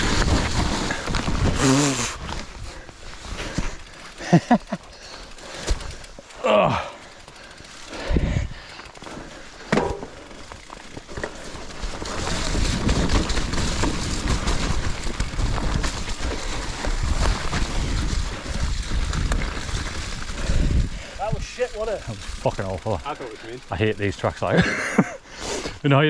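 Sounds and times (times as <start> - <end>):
bike knocks and rattles: 0.0 - 24.8
bike tyres rolling over dirt: 0.0 - 26.0
wind buffeting microphone: 11.7 - 23.0.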